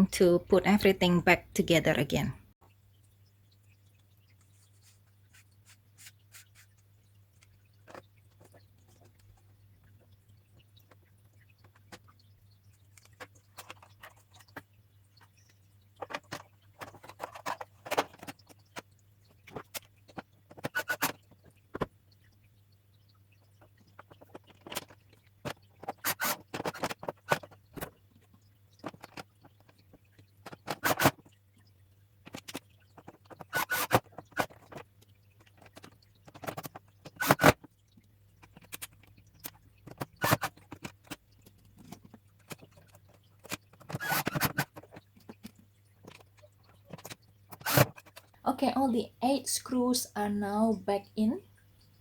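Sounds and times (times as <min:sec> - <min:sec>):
plastic parts clicking and knocking: 0:07.4 - 0:22.4, 0:23.4 - 0:31.4, 0:32.2 - 0:48.3.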